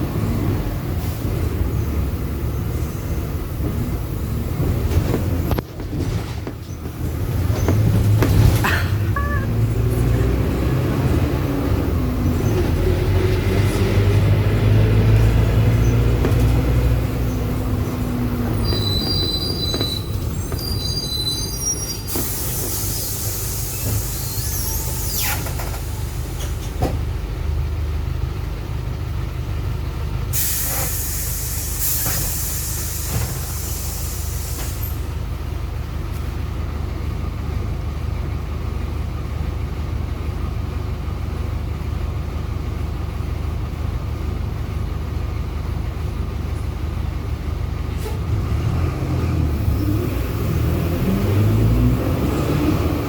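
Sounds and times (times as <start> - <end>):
bus engine and drivetrain drone: 0.0 - 53.0
air hiss: 22.0 - 26.6, 30.4 - 35.0.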